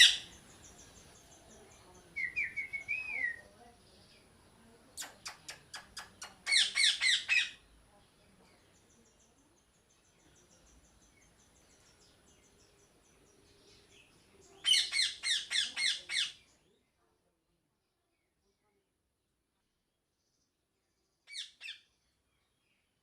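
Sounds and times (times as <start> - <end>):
faint bird chirps: 0.0 - 17.1, 19.6 - 23.0
parrot calling loudly: 6.5 - 7.6.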